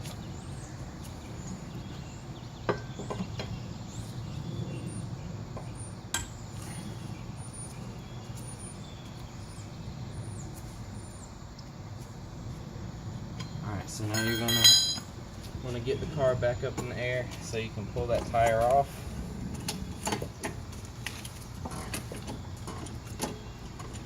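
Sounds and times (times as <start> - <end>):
lug wrench clinking on lug nuts: 14.1 - 15.1.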